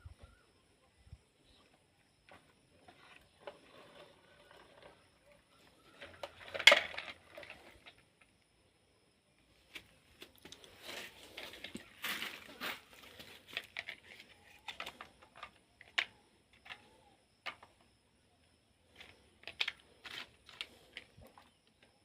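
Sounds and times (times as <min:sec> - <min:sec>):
plastic toys clattering: 0:02.2 - 0:08.3, 0:10.4 - 0:17.9, 0:18.8 - 0:22.0
plastic toys clicking and rustling: 0:02.3 - 0:08.3, 0:10.4 - 0:17.8, 0:18.9 - 0:22.0.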